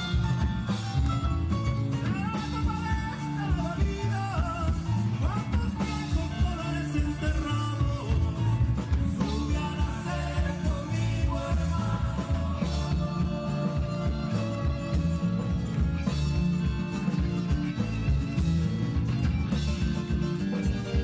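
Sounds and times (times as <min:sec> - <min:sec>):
rock band playing: 0:00.0 - 0:21.0
person singing: 0:02.0 - 0:17.2.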